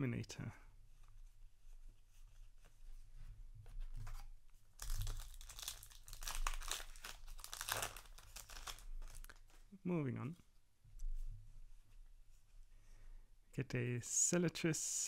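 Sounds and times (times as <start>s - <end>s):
foil wrapper crinkling and tearing: 4.8s - 9.4s.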